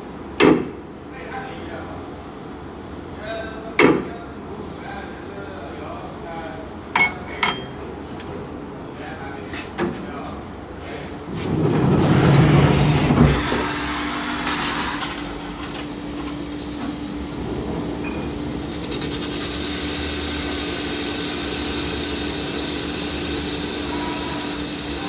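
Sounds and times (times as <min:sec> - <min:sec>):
boring machine humming: 0:11.2 - 0:25.0.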